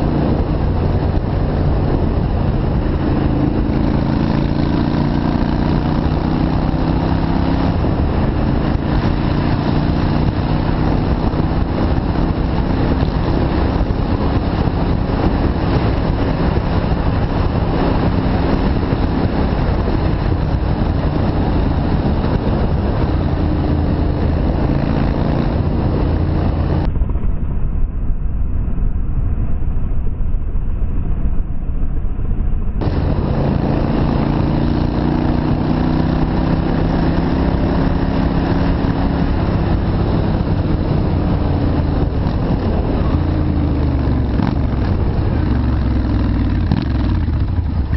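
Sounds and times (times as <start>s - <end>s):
motorcycle engine running: 0.0s - 27.4s, 32.1s - 47.9s
rush of wind noise: 0.0s - 47.9s.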